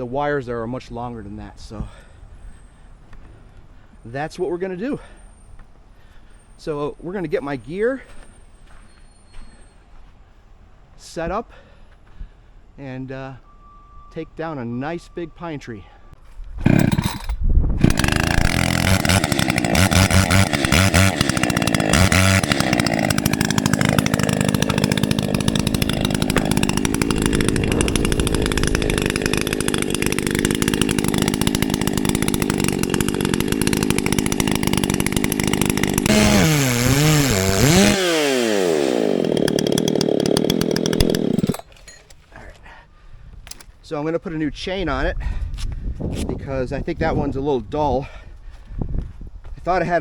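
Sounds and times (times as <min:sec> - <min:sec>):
chainsaw cutting wood: 0:16.5 - 0:42.0.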